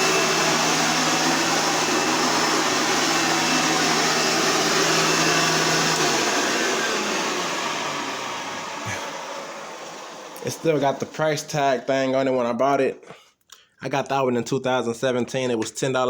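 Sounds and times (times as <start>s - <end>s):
vacuum cleaner motor whir: 0.0s - 12.4s.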